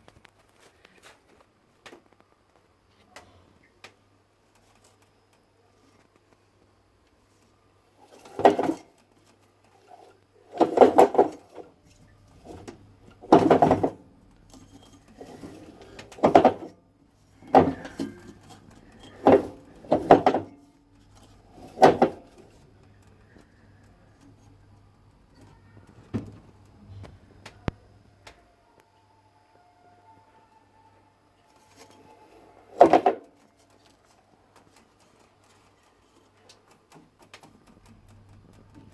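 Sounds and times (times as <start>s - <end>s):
washing machine drum clunking: 12.4s - 16.8s, 17.4s - 23.1s, 32.7s - 33.3s.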